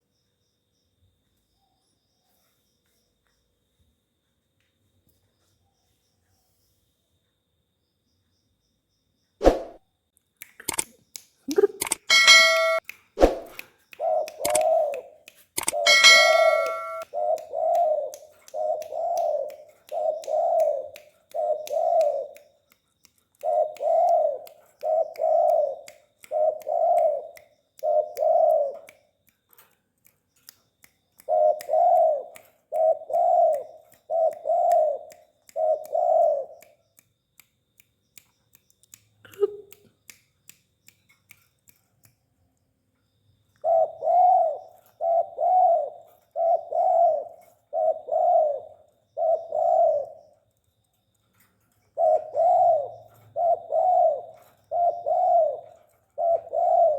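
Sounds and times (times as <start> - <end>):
faint regular clicks: 10.1 - 43.7, 50.0 - 52.3
metallic ding: 12.1 - 12.8, 15.9 - 17.0
dove cooing: 14.0 - 22.4, 23.4 - 28.9, 31.3 - 36.6, 43.6 - 50.3, 51.9 - 56.9.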